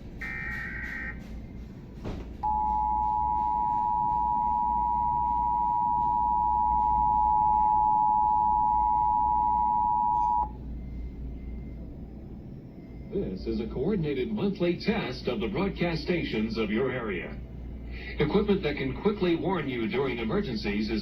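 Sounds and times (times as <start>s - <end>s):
piercing two-tone alert signal: 0.2s - 1.2s, 2.4s - 10.5s.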